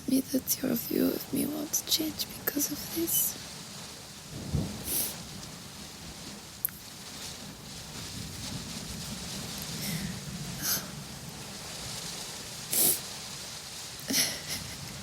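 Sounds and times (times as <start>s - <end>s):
steady rain: 0.0s - 15.0s
woman sniffling while crying: 12.8s - 13.0s, 14.1s - 14.7s.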